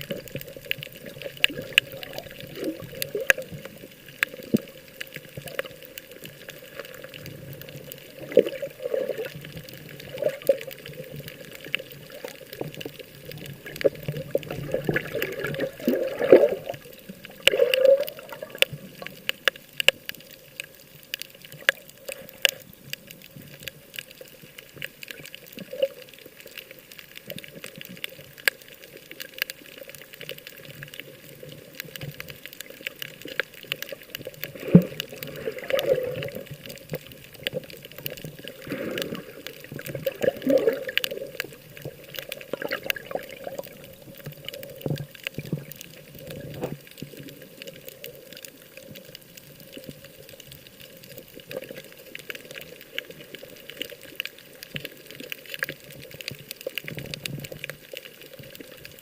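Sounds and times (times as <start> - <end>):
sea water sloshing and splashing: 0.0 - 59.0
small clicks and pops: 0.0 - 59.0.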